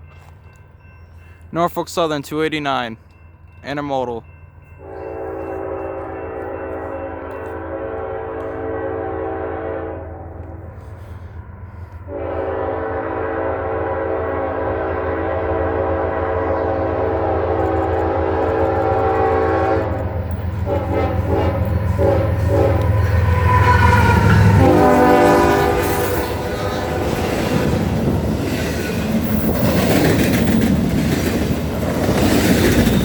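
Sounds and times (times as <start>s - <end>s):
diesel locomotive rumble: 0.0s - 33.0s
locomotive air horn chord: 4.8s - 27.8s.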